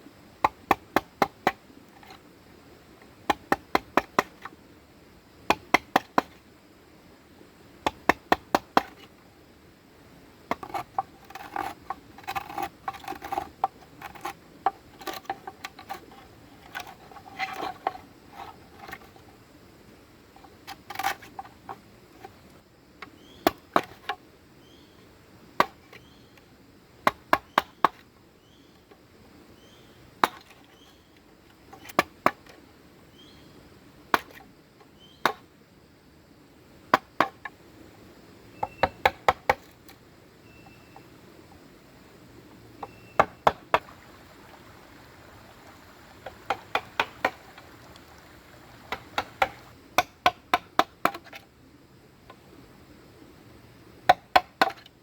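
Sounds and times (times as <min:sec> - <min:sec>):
hand tool striking bamboo: 0:05.5 - 0:06.3, 0:38.8 - 0:39.7, 0:42.8 - 0:43.8, 0:46.2 - 0:47.5, 0:48.9 - 0:51.4, 0:54.1 - 0:54.8.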